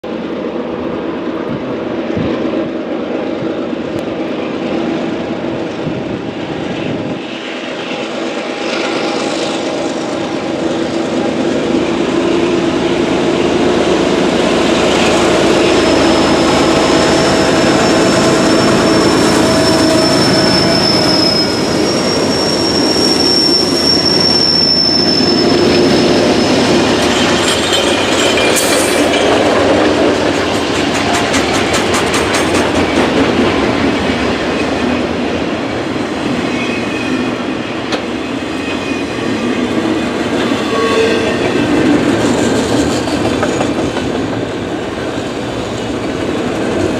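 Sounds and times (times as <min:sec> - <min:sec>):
train wheels clacking on rails: 0:06.8 - 0:46.9
high thin wheel squeal: 0:15.8 - 0:29.1.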